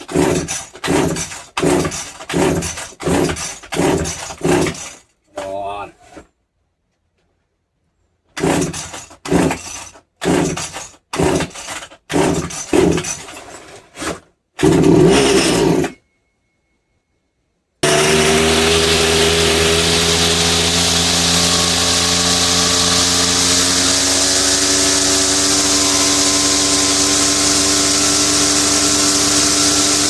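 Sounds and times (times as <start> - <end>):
strimmer engine running: 14.6 - 15.9, 17.8 - 30.0
strimmer starter cord pulls: 14.6 - 16.0, 17.8 - 30.0.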